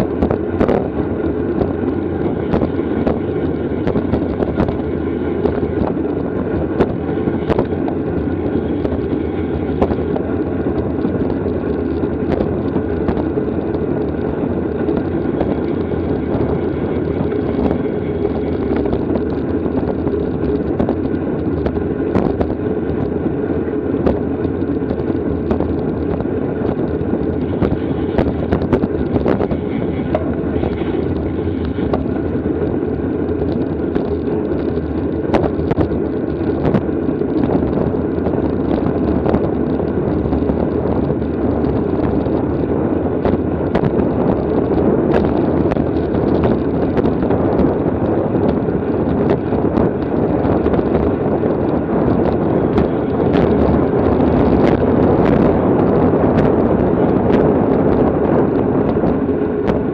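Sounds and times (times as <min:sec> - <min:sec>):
wind rush over microphone: 0:00.0 - 0:59.9.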